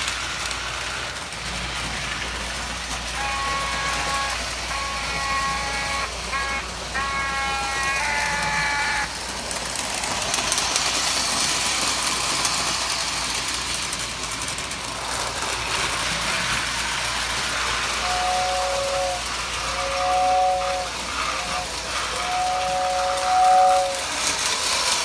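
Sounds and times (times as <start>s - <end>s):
toy train running on track: 0.0s - 25.0s
electric train horn blast: 3.0s - 9.3s, 16.3s - 25.0s
two-note train whistle: 3.1s - 9.2s, 16.3s - 25.0s.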